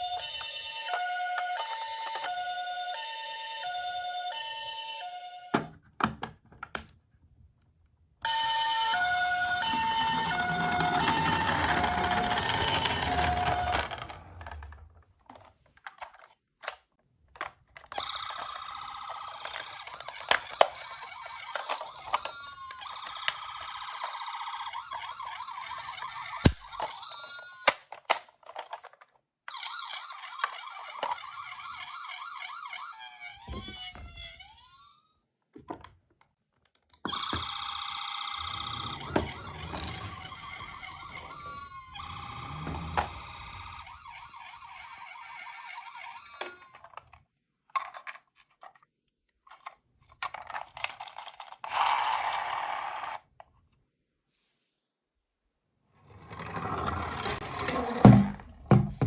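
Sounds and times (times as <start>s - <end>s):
toy electronic siren: 0.0s - 5.6s, 8.3s - 14.6s, 17.9s - 28.0s, 29.5s - 35.1s, 37.0s - 46.8s
low rolling rumble: 38.4s - 44.3s.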